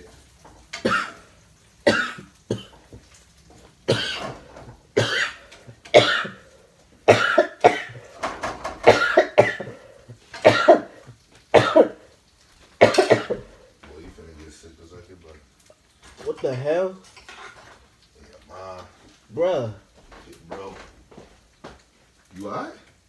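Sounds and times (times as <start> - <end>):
man coughing: 0.8 - 1.2, 1.9 - 2.8, 3.9 - 4.4, 5.0 - 6.4, 7.1 - 8.1, 8.8 - 9.8, 10.4 - 11.0, 11.6 - 12.0, 12.8 - 13.5.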